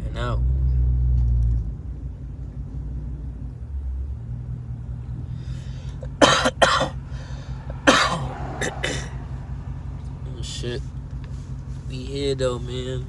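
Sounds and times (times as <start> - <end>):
car driving drone: 0.4 - 13.0
person coughing: 6.1 - 9.3.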